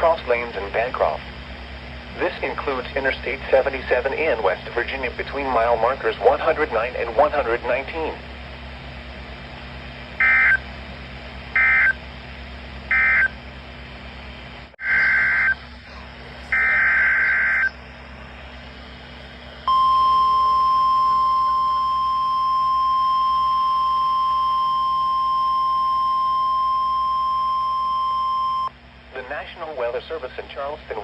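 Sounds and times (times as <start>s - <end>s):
steady warning alarm tone: 10.2s - 10.8s, 11.5s - 12.1s, 12.9s - 13.4s, 14.8s - 15.7s, 16.5s - 17.8s, 19.6s - 28.8s.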